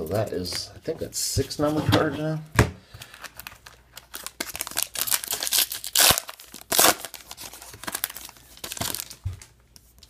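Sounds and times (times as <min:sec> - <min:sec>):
wrapper tearing and crinkling: 0:03.1 - 0:09.5.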